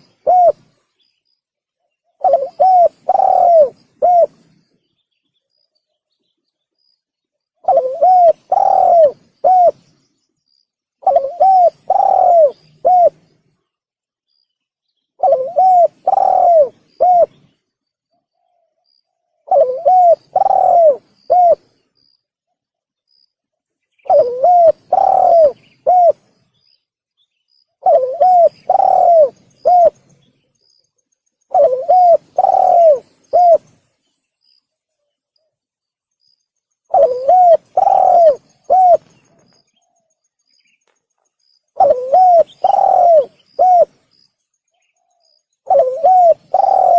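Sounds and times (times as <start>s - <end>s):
dove cooing: 0.0s - 0.8s, 2.1s - 4.5s, 7.6s - 9.8s, 11.0s - 13.3s, 15.2s - 17.5s, 19.4s - 21.8s, 24.0s - 26.3s, 27.8s - 30.1s, 31.5s - 33.8s, 36.9s - 40.0s, 41.8s - 44.0s, 45.0s - 46.9s.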